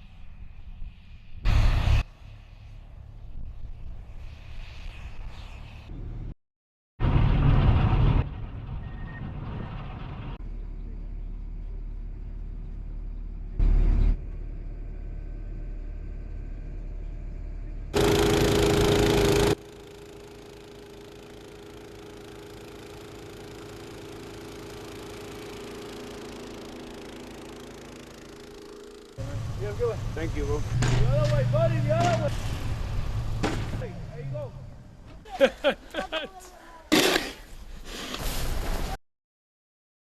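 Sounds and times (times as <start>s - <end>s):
vehicle engine running: 9.7s - 35.2s.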